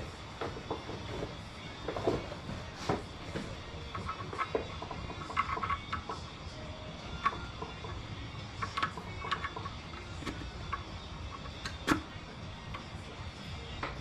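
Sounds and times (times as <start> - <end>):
metallic clicks of engine parts: 3.9 - 6.4, 7.1 - 12.9.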